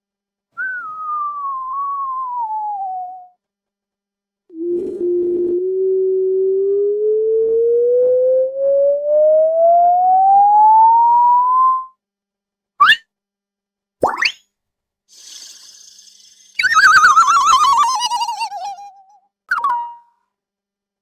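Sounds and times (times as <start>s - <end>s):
rising whistle-like tone: 15.2s - 18.9s.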